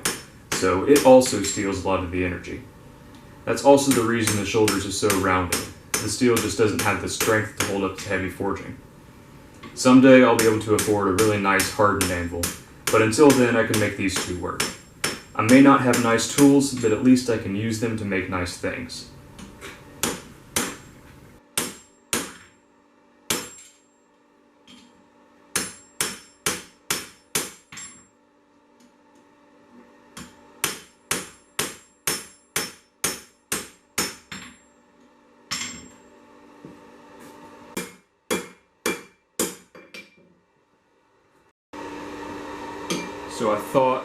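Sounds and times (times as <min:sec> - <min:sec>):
hammer striking steel on anvil: 0:00.0 - 0:01.7, 0:10.4 - 0:17.1, 0:20.0 - 0:21.0, 0:21.6 - 0:22.6, 0:23.3 - 0:23.9, 0:25.5 - 0:28.1, 0:30.2 - 0:34.7, 0:35.5 - 0:36.0, 0:37.8 - 0:40.2, 0:42.9 - 0:43.2.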